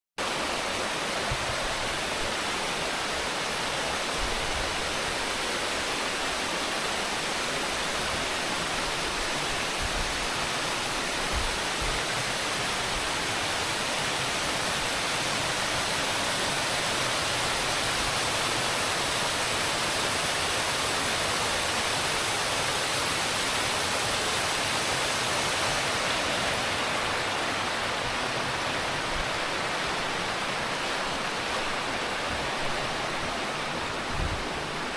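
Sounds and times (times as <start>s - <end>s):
flowing mountain water: 0.2s - 34.9s.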